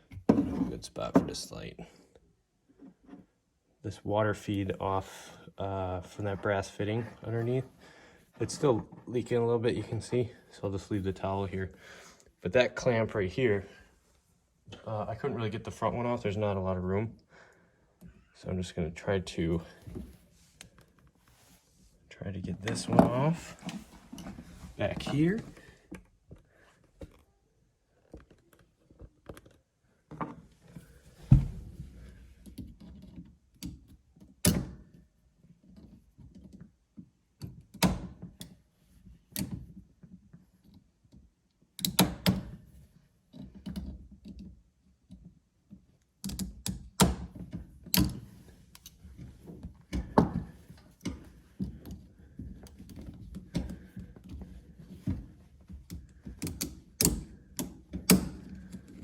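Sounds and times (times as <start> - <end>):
hand tools clicking on metal clamp: 55.9 - 59.0.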